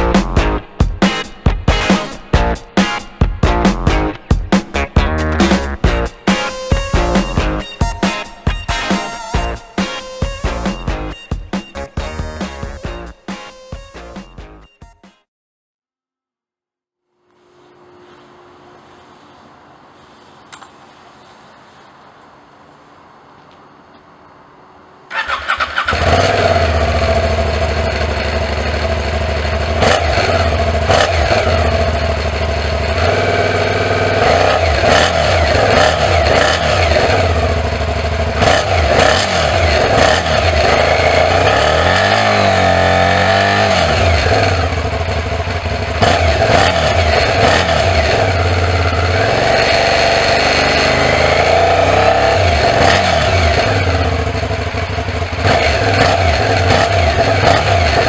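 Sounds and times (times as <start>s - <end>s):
motorcycle engine idling and revving: 0.0s - 7.7s, 8.5s - 13.2s, 25.1s - 58.0s.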